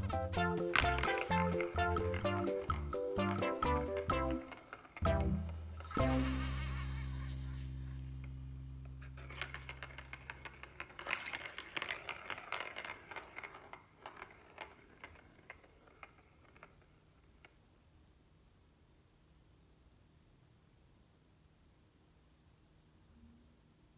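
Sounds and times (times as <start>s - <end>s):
cat toy ball clicking and rattling: 0.0s - 6.2s, 8.8s - 17.7s.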